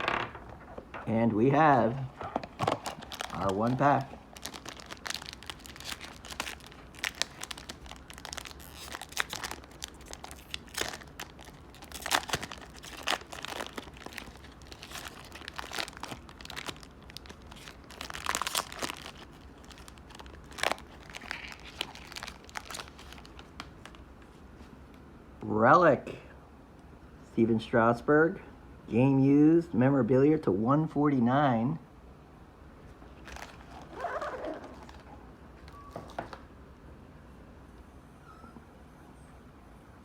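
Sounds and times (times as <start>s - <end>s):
plastic wrapper and cards crinkling: 0.0s - 24.0s, 33.1s - 36.4s.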